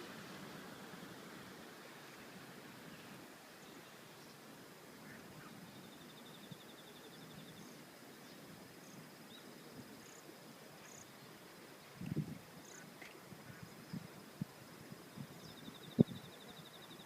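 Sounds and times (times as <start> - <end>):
high thin insect tone: 0.1 - 17.0.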